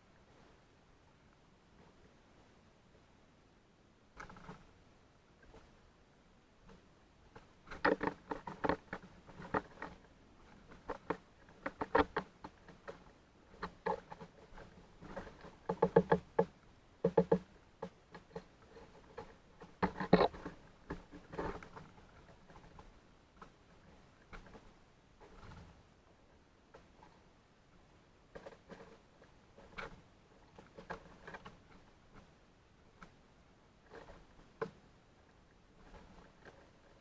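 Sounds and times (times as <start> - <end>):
birds pecking on feeder: 6.6 - 25.8.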